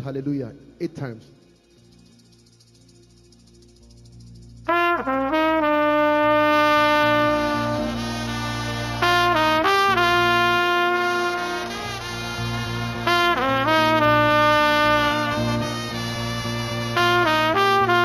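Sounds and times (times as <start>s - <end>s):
trumpet long blasts: 4.7s - 18.0s.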